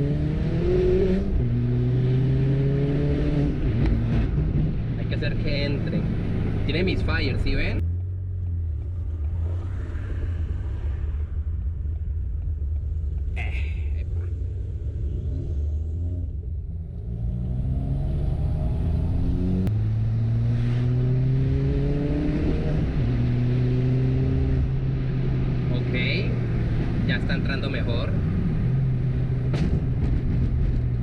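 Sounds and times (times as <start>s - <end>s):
car engine accelerating: 14.1s - 31.0s.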